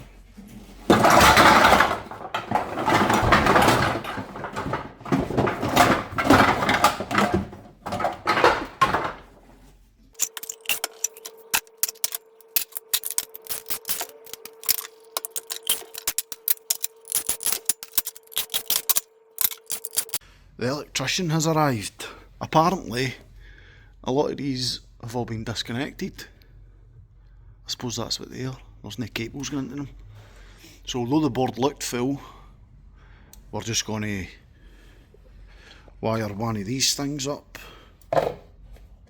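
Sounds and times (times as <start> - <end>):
scrap metal clattering: 0.0 - 20.2.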